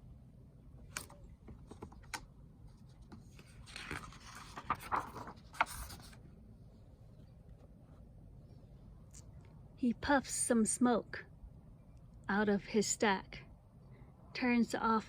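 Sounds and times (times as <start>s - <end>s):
book pages rustling: 0.9s - 6.2s.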